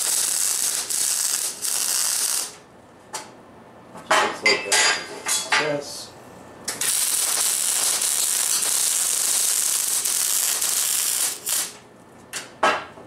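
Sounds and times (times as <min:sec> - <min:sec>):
welding arc hissing: 0:00.0 - 0:02.6, 0:06.7 - 0:11.8.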